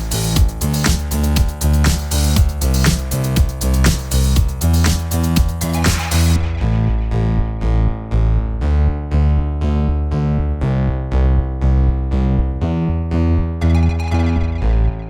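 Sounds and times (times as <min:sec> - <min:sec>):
electronic keyboard chords: 0:00.0 - 0:06.4, 0:13.6 - 0:15.0
hi-hat rhythm: 0:00.0 - 0:06.6
bass line: 0:00.0 - 0:15.0.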